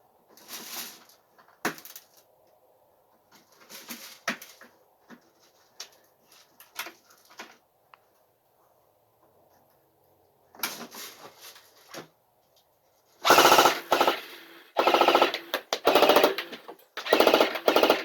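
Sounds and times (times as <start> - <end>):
airsoft machine gun bursts: 13.2 - 18.0.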